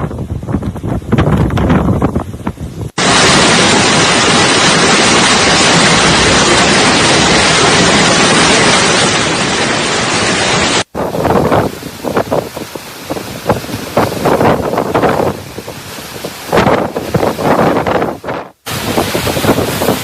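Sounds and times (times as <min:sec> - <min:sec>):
wind buffeting microphone: 0:00.0 - 0:03.4, 0:10.9 - 0:20.0.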